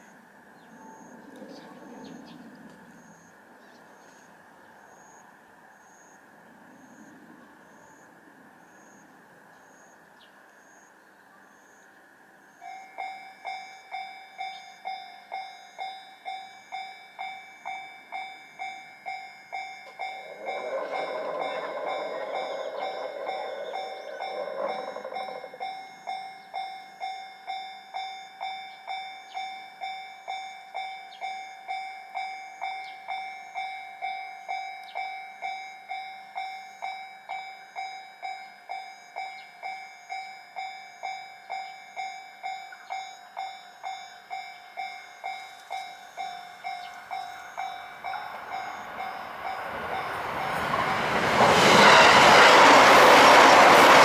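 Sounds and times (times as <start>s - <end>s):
approaching train: 0.0s - 54.0s
level crossing warning bell: 12.6s - 54.0s.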